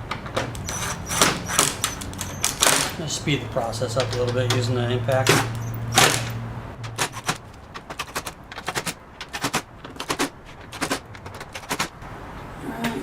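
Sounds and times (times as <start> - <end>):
impact driver hammering: 0.4 - 3.0, 5.2 - 7.4.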